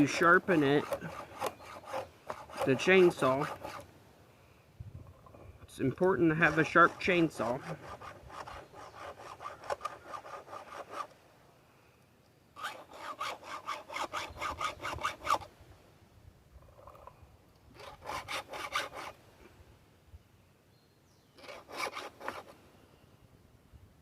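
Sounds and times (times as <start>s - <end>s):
file scraping chainsaw chain: 0.0s - 3.9s, 5.7s - 11.1s, 12.6s - 15.5s, 17.7s - 19.2s, 21.4s - 22.6s.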